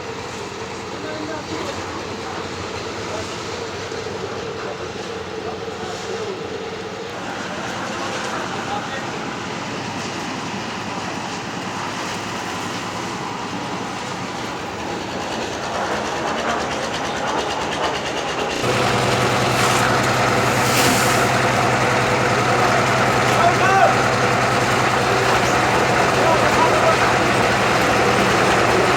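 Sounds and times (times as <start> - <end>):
steady engine hum: 0.0 - 28.9
concrete mixer rattling: 7.3 - 28.9.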